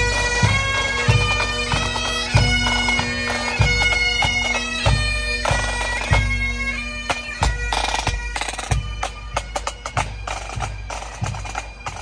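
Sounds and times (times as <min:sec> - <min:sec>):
bagpipes playing melody: 0:00.0 - 0:12.0.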